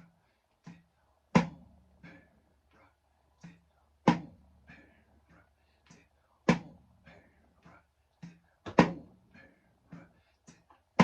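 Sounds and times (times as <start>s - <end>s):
drum struck with sticks: 4.0s - 4.4s.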